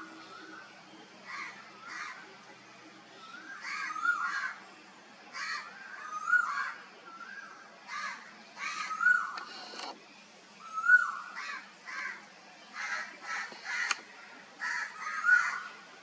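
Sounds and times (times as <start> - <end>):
birds harsh calls: 5.4 - 9.9, 10.7 - 14.0
sharp click: 9.4 - 10.0, 13.5 - 14.1.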